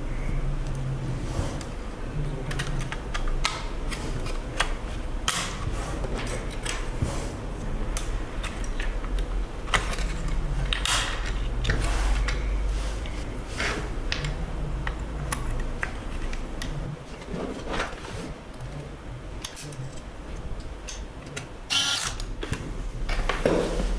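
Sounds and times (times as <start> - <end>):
steady low hum: 0.0 - 23.9
plastic and metal parts clicking: 2.4 - 5.5.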